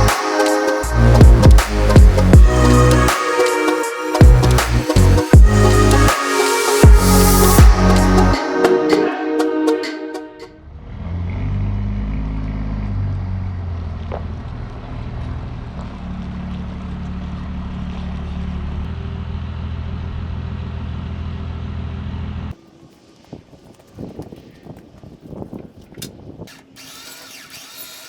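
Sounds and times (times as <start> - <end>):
vehicle engine droning: 10.6 - 22.6.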